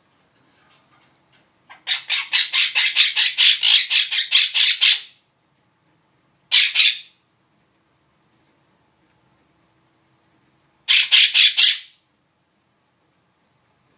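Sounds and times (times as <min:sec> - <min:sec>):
pet bird squawking: 0:01.7 - 0:05.2, 0:06.5 - 0:07.1, 0:10.9 - 0:12.0.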